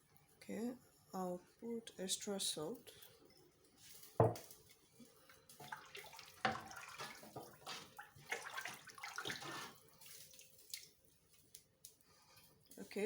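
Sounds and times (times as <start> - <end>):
liquid sloshing in a cooking pot: 3.0 - 12.8.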